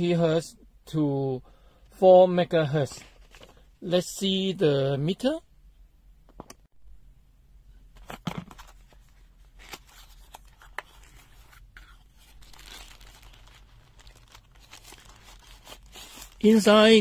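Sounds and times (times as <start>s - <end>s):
packaging rustling and crinkling: 8.0s - 17.0s.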